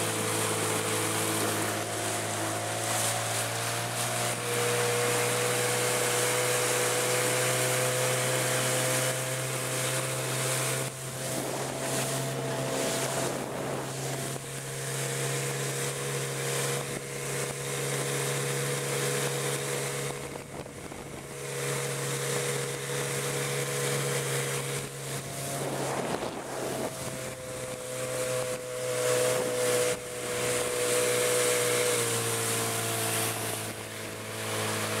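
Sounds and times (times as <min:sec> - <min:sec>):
outboard motor running: 0:00.0 - 0:35.0
wind on microphone: 0:08.6 - 0:17.6, 0:19.6 - 0:21.6, 0:22.6 - 0:30.9.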